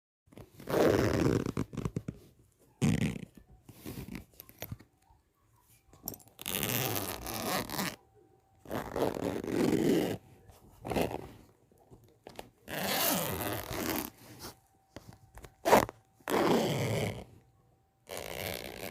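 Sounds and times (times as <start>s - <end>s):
zipper rasping open: 0.3s - 4.8s, 6.4s - 8.0s, 8.6s - 10.2s, 10.8s - 11.4s, 12.7s - 14.2s, 15.6s - 17.3s, 18.1s - 18.9s.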